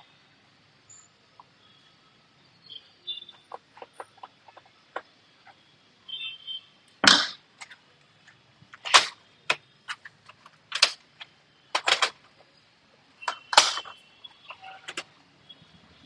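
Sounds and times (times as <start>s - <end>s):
handling noise: 7.0s - 12.6s, 13.2s - 15.2s
plastic cover clicking into place: 11.8s - 12.2s, 13.3s - 13.9s.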